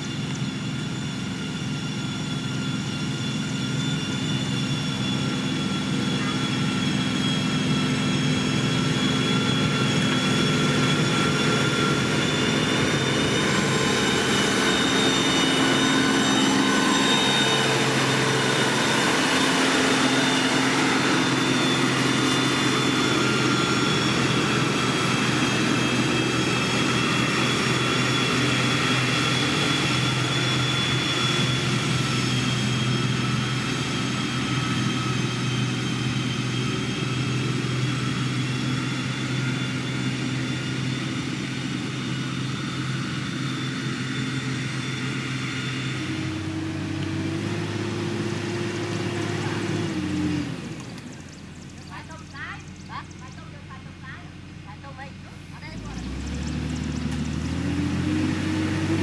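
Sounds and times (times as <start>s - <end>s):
high whine: 0.0s - 39.8s
diesel engine droning under load: 0.0s - 59.0s.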